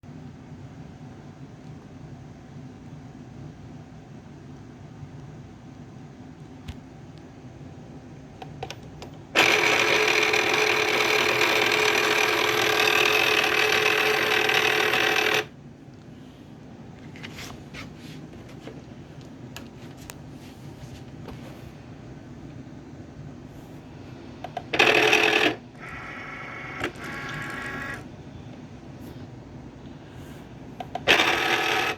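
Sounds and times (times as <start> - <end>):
cutting machine grinding: 31.0 - 31.9.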